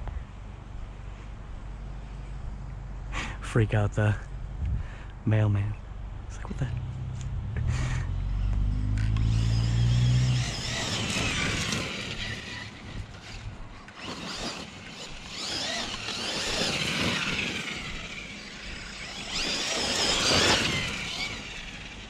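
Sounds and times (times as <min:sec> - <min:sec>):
deep steady hum: 0:00.0 - 0:13.8
electric motor whining: 0:07.6 - 0:22.0.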